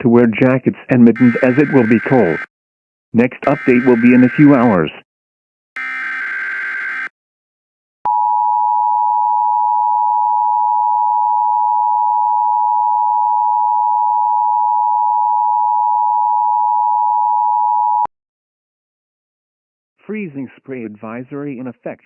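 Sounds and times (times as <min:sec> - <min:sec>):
two-tone alert tone: 0:01.2 - 0:02.5, 0:03.5 - 0:04.8.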